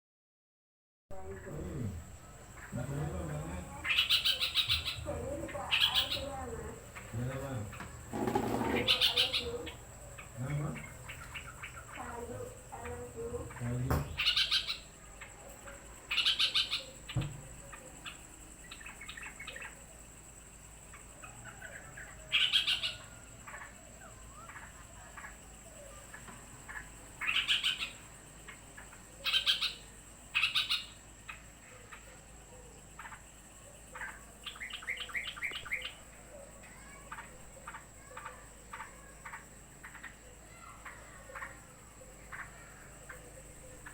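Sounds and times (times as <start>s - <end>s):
bulbuls chattering calls: 1.2s - 43.9s.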